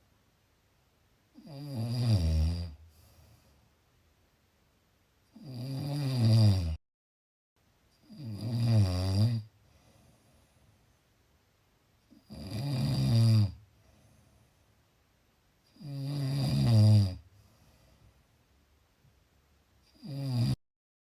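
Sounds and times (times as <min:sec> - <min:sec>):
snoring: 0:01.3 - 0:02.8, 0:05.3 - 0:06.8, 0:08.0 - 0:09.5, 0:12.1 - 0:13.6, 0:15.7 - 0:17.3, 0:19.9 - 0:20.6.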